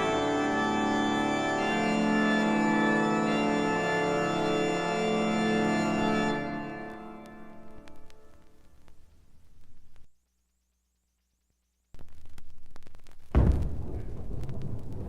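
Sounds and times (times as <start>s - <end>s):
organ chords: 0.0s - 8.5s.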